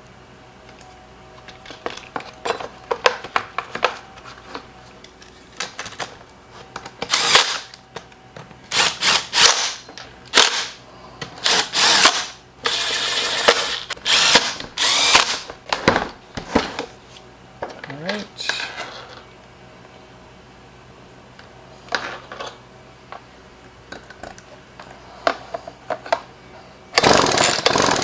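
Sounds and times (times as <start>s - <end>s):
parts and screws clicking: 6.9s - 7.8s, 11.4s - 15.5s
power drill bursts: 7.1s - 7.7s, 8.7s - 10.8s, 11.4s - 15.5s, 27.0s - 28.0s.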